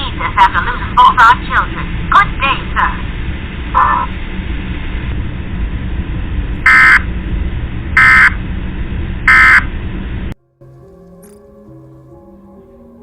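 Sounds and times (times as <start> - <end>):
harsh data burst buzzes: 6.6 - 7.1, 8.0 - 8.4, 9.3 - 9.7.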